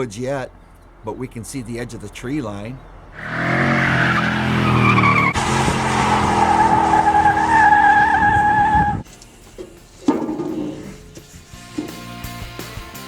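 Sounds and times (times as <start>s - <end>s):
tires squealing: 1.4s - 12.0s
engine revving: 3.1s - 9.0s.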